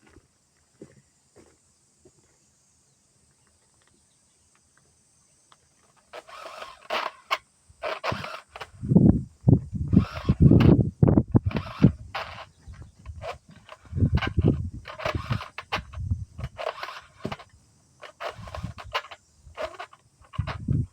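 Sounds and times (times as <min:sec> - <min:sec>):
recoil starter pulls rattling: 0:06.1 - 0:09.0, 0:09.8 - 0:20.9.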